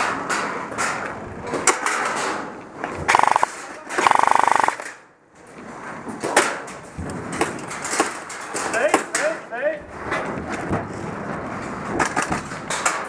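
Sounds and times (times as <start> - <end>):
airsoft gun full-auto bursts: 3.1 - 4.8.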